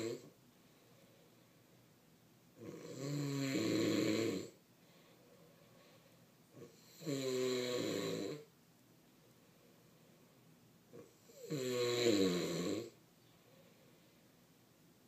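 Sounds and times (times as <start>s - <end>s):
man snoring: 0.0s - 0.3s, 2.6s - 4.6s, 6.6s - 8.5s, 10.9s - 13.0s.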